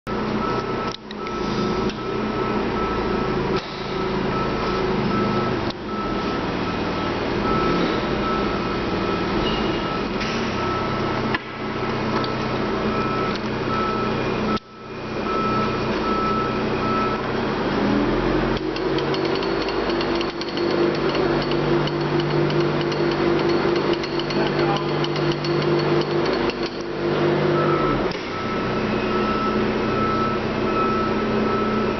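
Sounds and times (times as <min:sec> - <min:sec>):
grinder motor hum and whine: 0:00.1 - 0:31.9.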